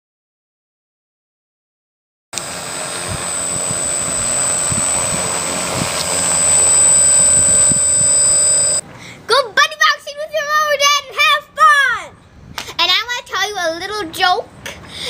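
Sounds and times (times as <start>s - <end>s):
model plane motor whining: 2.4s - 8.8s.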